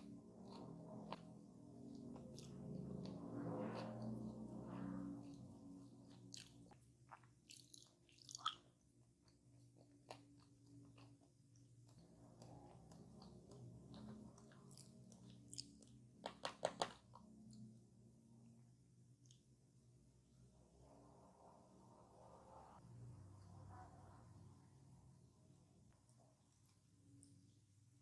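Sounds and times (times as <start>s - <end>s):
chewing crunchy pie crust: 0.0s - 17.7s.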